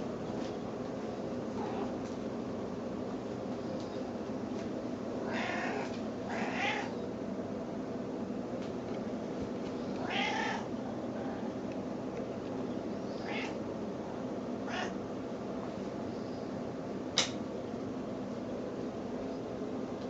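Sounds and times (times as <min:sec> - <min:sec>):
cat meowing: 0:05.2 - 0:06.9, 0:10.0 - 0:10.7, 0:13.2 - 0:13.6, 0:14.7 - 0:15.0.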